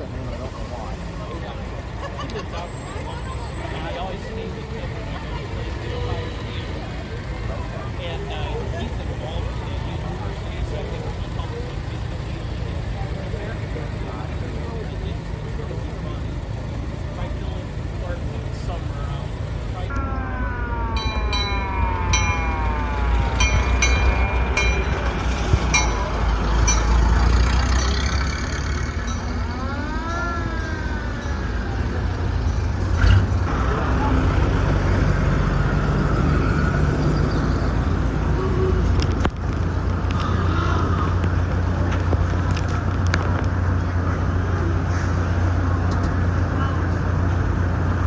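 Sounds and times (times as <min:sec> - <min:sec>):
vehicle engines rumbling: 0:00.0 - 0:48.0
warning horn wail: 0:02.9 - 0:27.2.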